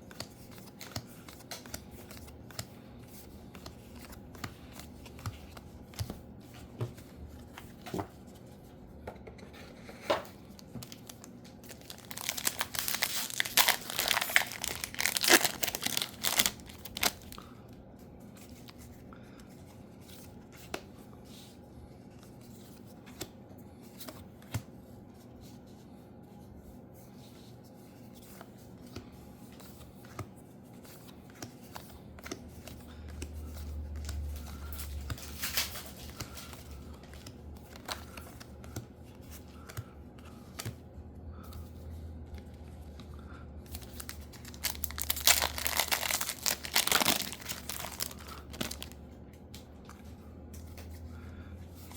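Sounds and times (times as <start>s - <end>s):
wrapper crinkling as torn open: 10.9s - 17.4s, 43.7s - 49.0s.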